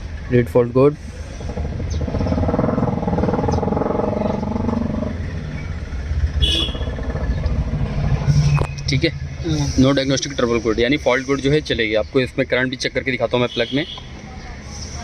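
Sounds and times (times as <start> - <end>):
vehicle engine running: 1.0 - 12.1.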